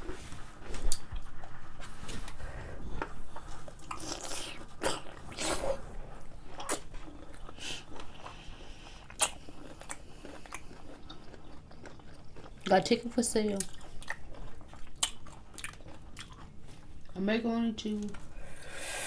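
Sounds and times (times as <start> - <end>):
pickle crunching and chewing: 9.0 - 12.8, 13.4 - 16.6.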